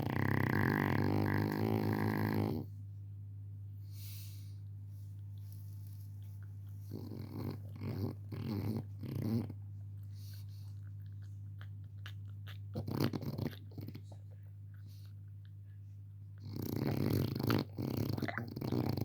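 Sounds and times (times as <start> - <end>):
dog snoring: 0.0 - 2.8, 6.8 - 10.8, 12.4 - 14.2, 16.4 - 19.0
steady low hum: 0.0 - 19.0.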